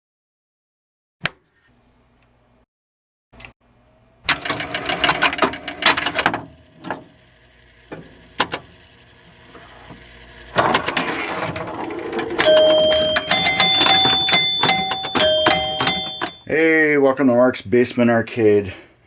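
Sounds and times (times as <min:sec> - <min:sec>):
mechanical clicking and clattering: 0:04.3 - 0:09.4
steady ringing tones: 0:11.7 - 0:16.5.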